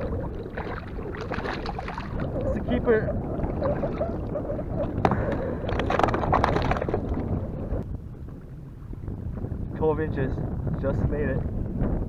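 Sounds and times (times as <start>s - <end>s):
wind rumbling on microphone: 0.0s - 12.0s
knocks and rattles: 5.0s - 7.2s.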